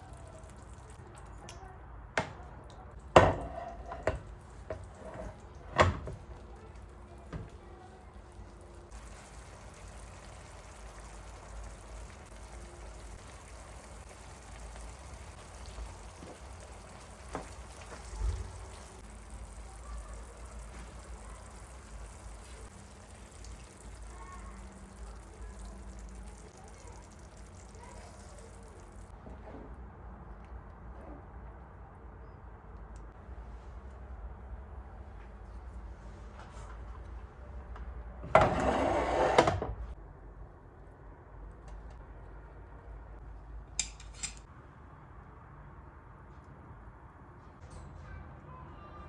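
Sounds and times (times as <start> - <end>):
tap water running: 3.0 - 29.1.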